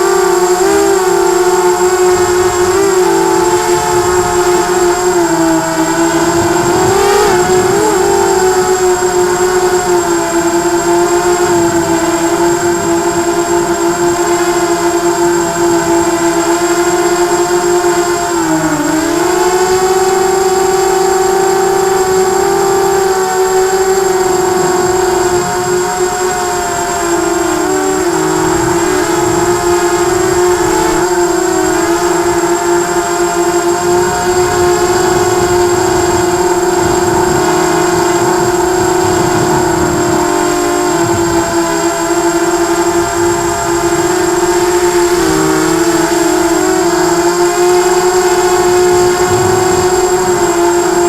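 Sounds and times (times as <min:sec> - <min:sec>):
drone propellers whining: 0:00.0 - 0:51.0.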